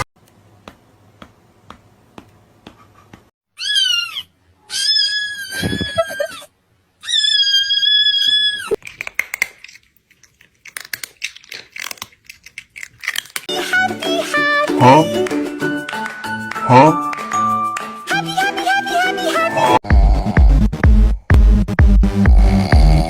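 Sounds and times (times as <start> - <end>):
cat meowing: 3.6 - 6.4, 7.0 - 8.8.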